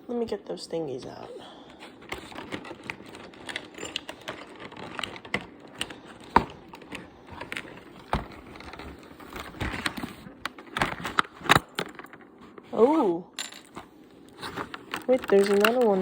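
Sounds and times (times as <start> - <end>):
packaging crinkling: 1.8 - 12.4, 13.9 - 16.0.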